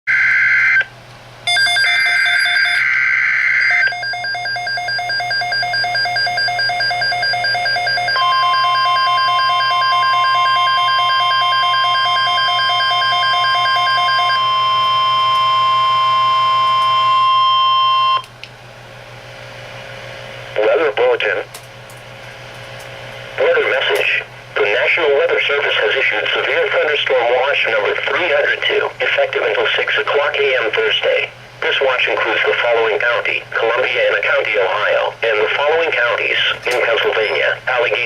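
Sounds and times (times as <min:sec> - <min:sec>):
steady warning alarm tone: 0:00.1 - 0:18.3, 0:35.6 - 0:37.8
rapid alarm beeps: 0:01.5 - 0:18.2, 0:36.9 - 0:37.6
radio hiss: 0:23.4 - 0:38.0.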